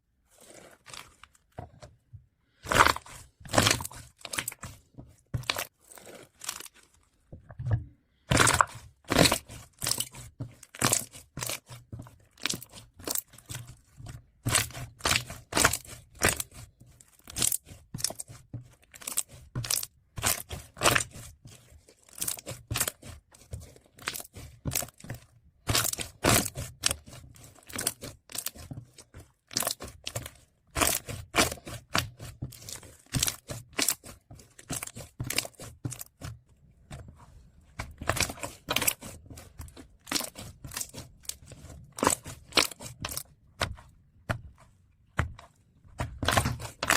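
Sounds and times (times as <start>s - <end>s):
slime squishing and popping: 8.3s - 13.6s, 22.1s - 28.7s, 29.5s - 36.2s, 46.0s - 46.9s.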